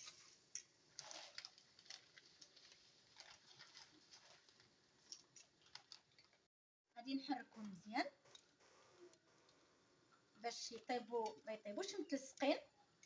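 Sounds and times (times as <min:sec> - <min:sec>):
dry spaghetti clicking and rustling: 0:00.0 - 0:06.5.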